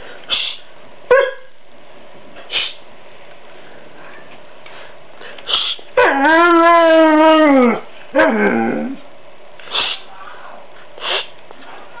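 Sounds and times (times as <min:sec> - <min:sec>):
dog howling: 0:06.0 - 0:09.0.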